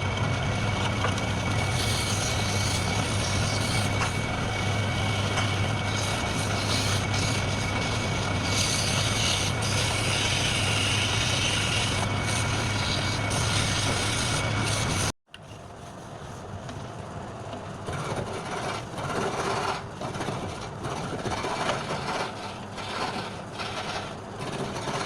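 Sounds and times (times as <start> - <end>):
wood lathe running: 0.0 - 15.1, 17.9 - 25.0.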